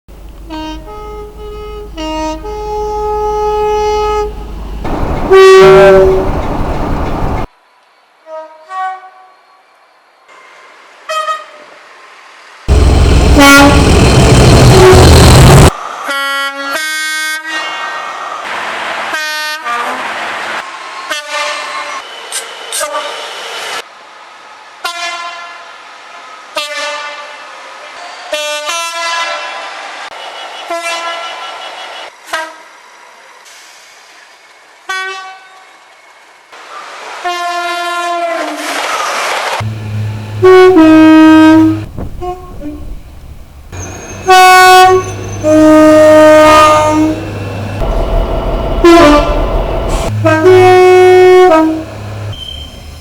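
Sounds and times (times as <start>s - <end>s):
two-tone train horn blasts: 0.4s - 6.5s, 8.2s - 9.4s, 11.1s - 11.8s, 12.7s - 18.0s, 19.1s - 20.1s, 21.1s - 22.0s, 24.8s - 25.7s, 26.6s - 27.4s, 28.3s - 29.5s, 30.7s - 32.7s, 34.9s - 35.6s, 37.2s - 38.6s, 39.6s - 43.0s, 43.7s - 52.7s.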